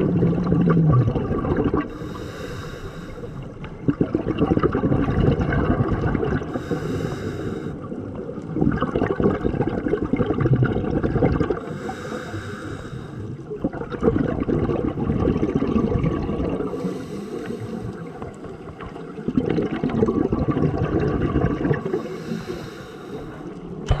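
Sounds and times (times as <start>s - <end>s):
bubbling on exhale: 0.0s - 24.0s
regulator hiss on inhale: 1.9s - 3.6s, 6.5s - 7.9s, 11.6s - 13.4s, 16.7s - 18.8s, 21.9s - 23.6s.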